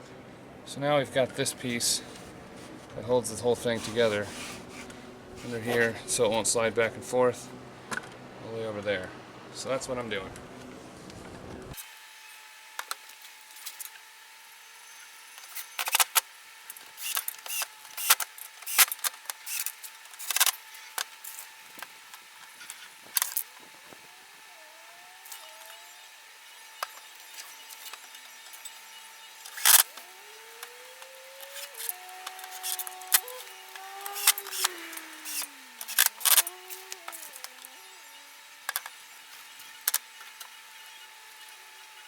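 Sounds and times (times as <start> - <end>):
faint steady hum: 0.0 - 11.8
cordless drill driving screws: 16.8 - 21.9, 26.7 - 42.0.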